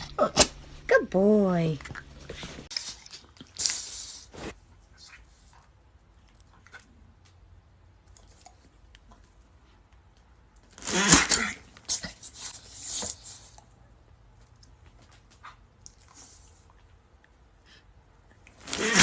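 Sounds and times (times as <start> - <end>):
pet sneezing: 10.8 - 12.9, 18.6 - 19.0.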